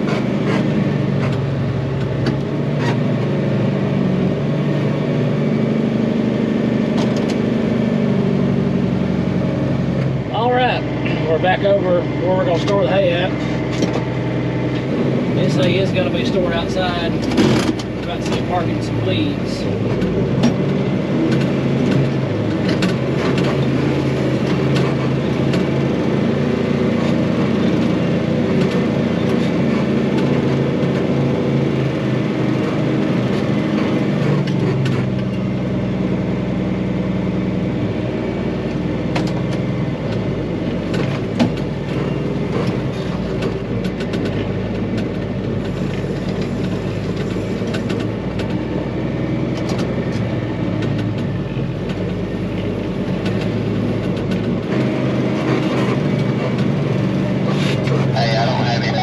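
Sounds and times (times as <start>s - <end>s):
tractor engine running: 0.0s - 59.0s
clanks and rattles: 17.2s - 18.5s.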